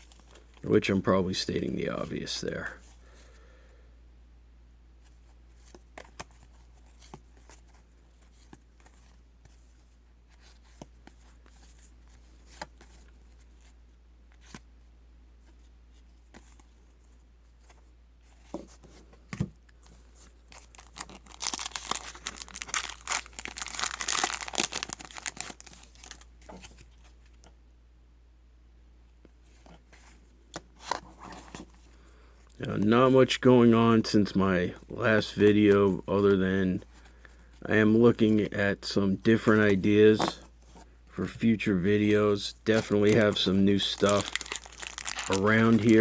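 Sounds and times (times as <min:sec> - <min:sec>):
wrapper tearing and crinkling: 0:20.4 - 0:26.3, 0:42.7 - 0:46.0.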